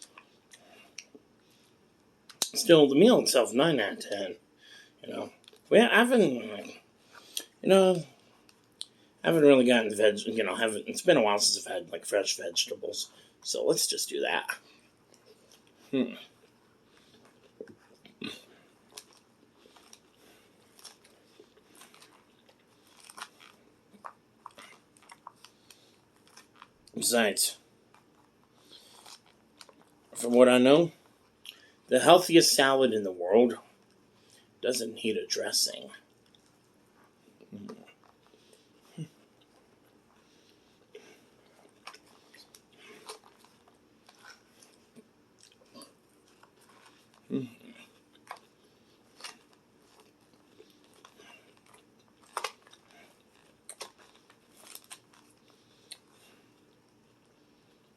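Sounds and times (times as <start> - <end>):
crunchy salad chewing: 15.0 - 27.0, 27.8 - 30.0, 37.3 - 57.9.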